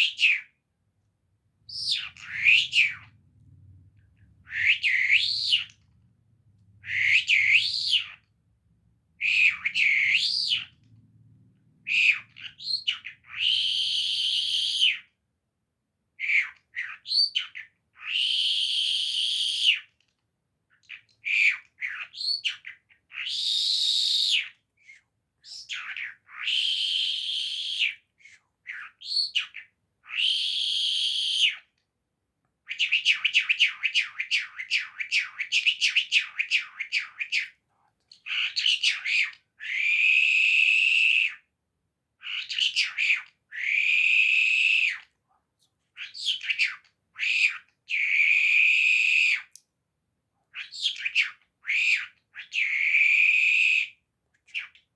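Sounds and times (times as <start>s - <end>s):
songbird buzzy song: 1.6s - 8.2s, 20.7s - 31.7s.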